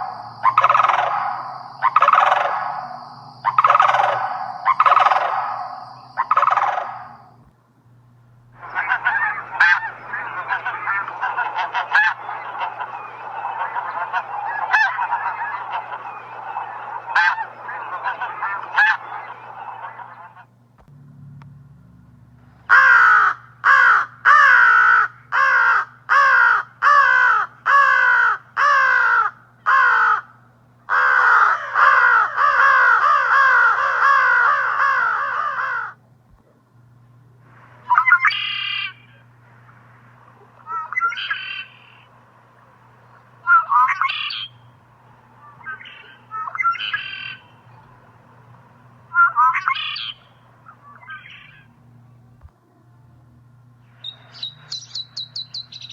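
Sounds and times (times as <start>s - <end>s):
geese honking: 0.0s - 7.4s, 8.6s - 20.5s, 22.7s - 30.3s, 30.9s - 36.0s, 40.2s - 51.8s.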